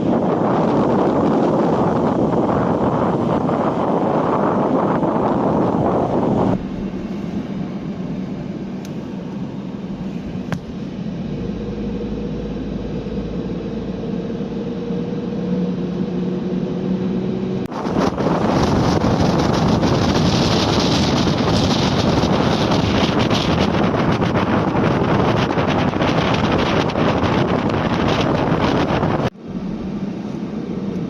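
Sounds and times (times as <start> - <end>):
engine drone: 0.0 - 31.0
strong sea wind: 0.0 - 31.0
wind buffeting microphone: 0.0 - 31.0
waves breaking: 6.2 - 12.7.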